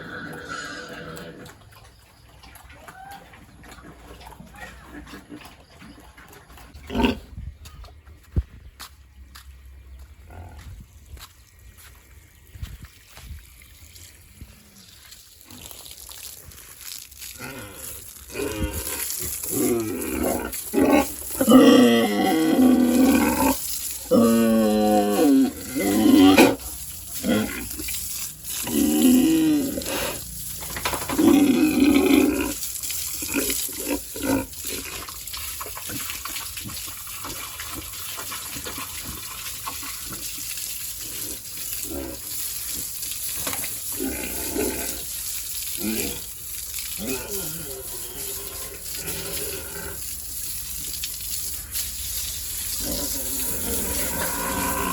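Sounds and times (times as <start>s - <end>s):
pigs squealing: 0.0s - 1.6s, 17.4s - 30.3s, 47.0s - 50.0s, 52.8s - 54.9s
spraying water hiss: 11.8s - 54.9s.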